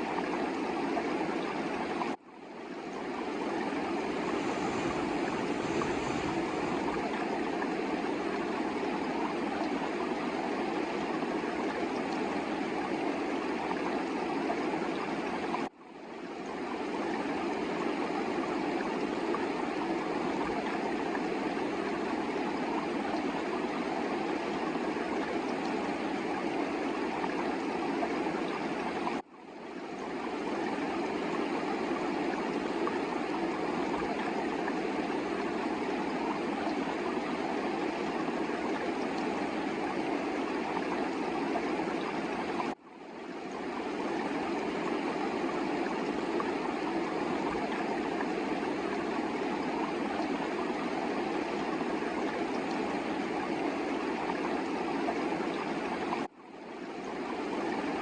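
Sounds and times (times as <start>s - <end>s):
river water rushing: 3.9s - 7.5s.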